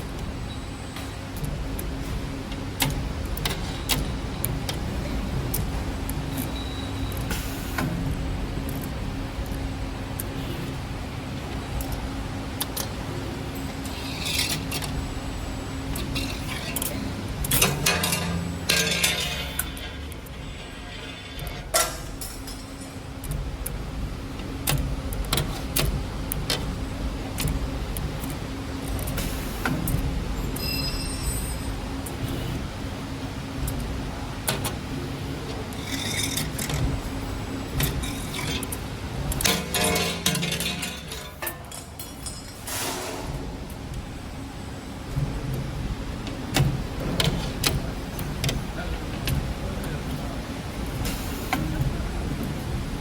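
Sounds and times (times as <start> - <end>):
wire forming machine humming: 0.0 - 53.0
metallic clattering: 16.1 - 23.0, 37.7 - 42.6.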